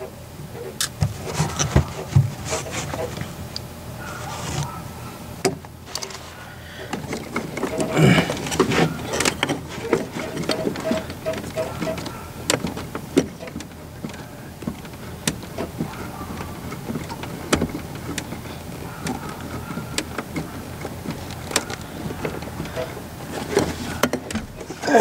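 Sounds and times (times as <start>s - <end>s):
clicks and knocks of hand work: 5.4s - 25.0s.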